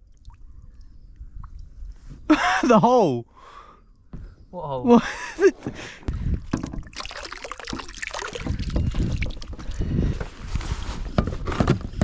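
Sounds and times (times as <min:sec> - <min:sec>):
wind rumbling on microphone: 0:05.7 - 0:07.0, 0:08.1 - 0:12.0
water splashing around kayak: 0:06.1 - 0:11.1
small knocks: 0:06.5 - 0:06.9.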